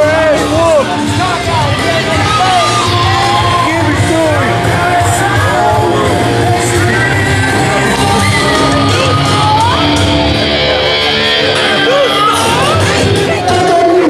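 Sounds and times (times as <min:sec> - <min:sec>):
crowd shouting: 0:00.0 - 0:14.0
loud music with steady bass: 0:00.0 - 0:14.0.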